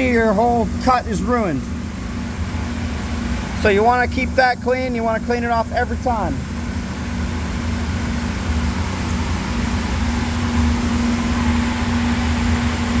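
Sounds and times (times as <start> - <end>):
vacuum motor humming: 6.4 - 13.0.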